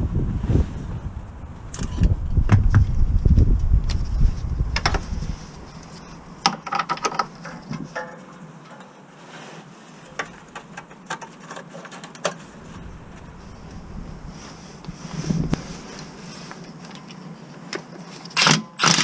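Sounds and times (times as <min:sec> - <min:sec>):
wind rumble on microphone: 0:00.0 - 0:06.4, 0:12.4 - 0:16.6.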